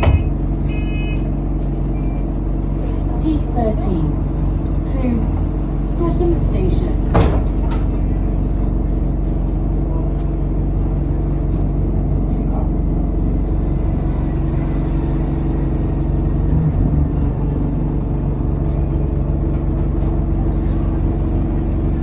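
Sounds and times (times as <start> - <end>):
faint turbo whistle: 0.0 - 1.3
bus diesel engine running: 0.0 - 22.0
road and cabin rumble: 0.0 - 22.0.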